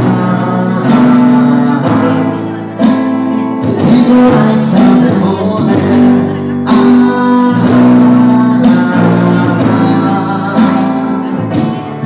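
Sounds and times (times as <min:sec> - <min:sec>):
live band guitar instrumental: 0:00.0 - 0:12.0.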